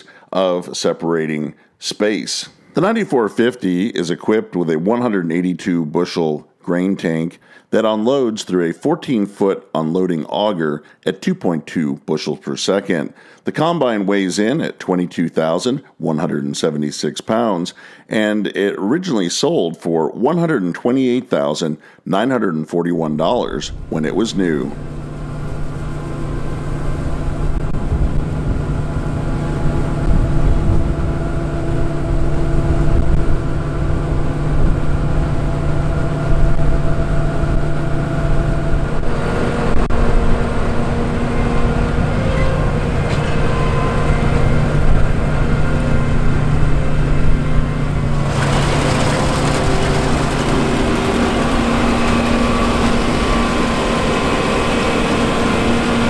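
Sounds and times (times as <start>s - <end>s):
diesel engine drone: 23.7s - 56.0s
threshing machinery hum: 23.7s - 56.0s.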